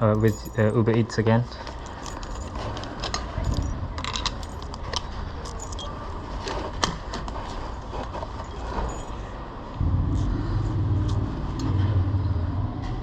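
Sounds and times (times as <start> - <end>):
small metal objects clinking: 0.0 - 6.1, 7.7 - 9.4
low street rumble: 0.0 - 13.0.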